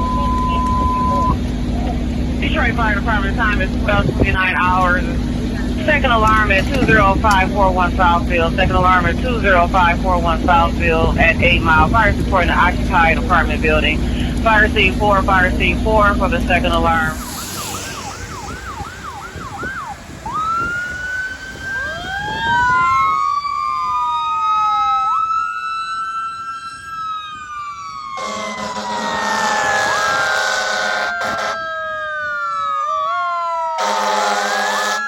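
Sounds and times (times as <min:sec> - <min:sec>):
deep steady horn: 0:00.0 - 0:20.8, 0:28.2 - 0:31.6, 0:33.8 - 0:35.0
fire engine sirens wailing: 0:00.0 - 0:35.0
siren yelp: 0:00.0 - 0:35.0.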